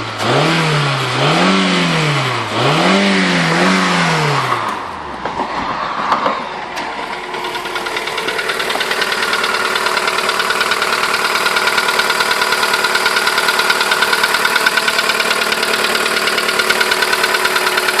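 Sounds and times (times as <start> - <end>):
car engine revving: 0.0 - 18.0
engine idling with fast knocking: 7.0 - 18.0.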